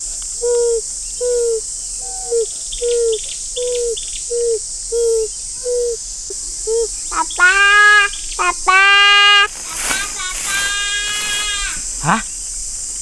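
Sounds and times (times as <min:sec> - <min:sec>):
insects chirring: 0:00.0 - 0:13.0
low hoot-like call: 0:06.6 - 0:12.5.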